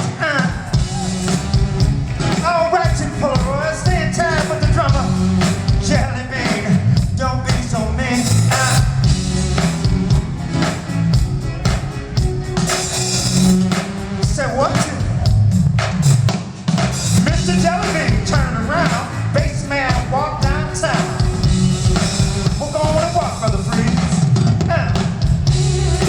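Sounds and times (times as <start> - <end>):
live funk band playing: 0.0 - 26.0
sung melodic lines: 17.4 - 23.8.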